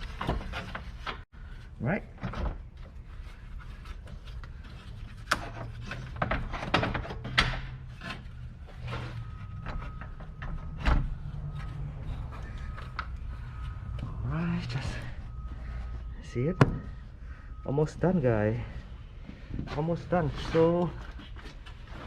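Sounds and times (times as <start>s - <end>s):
steady low hum: 7.5s - 19.8s
knocks and clicks of car parts: 16.5s - 17.0s.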